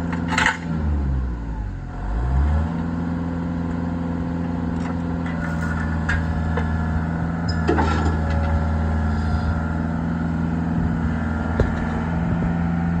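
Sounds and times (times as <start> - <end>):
skid steer engine running: 0.0 - 13.0
short metal clanks and knocks: 0.1 - 0.7, 4.8 - 6.8, 7.4 - 8.6, 11.6 - 12.1.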